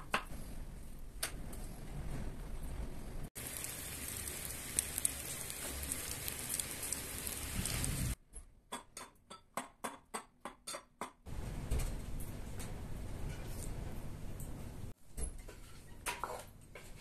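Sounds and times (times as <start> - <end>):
steady rain falling: 3.4 - 8.2.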